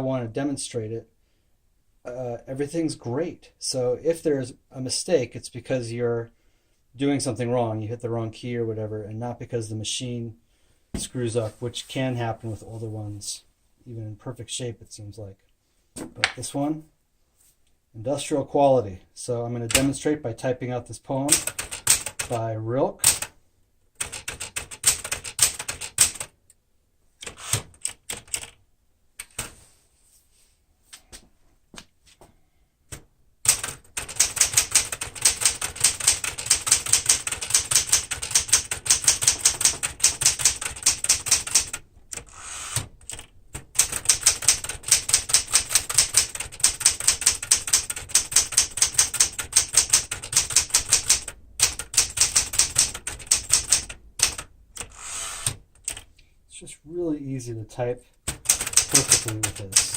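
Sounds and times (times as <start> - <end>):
typewriter keystrokes clacking: 21.3 - 22.3, 24.0 - 26.3, 33.5 - 56.1, 58.3 - 59.9.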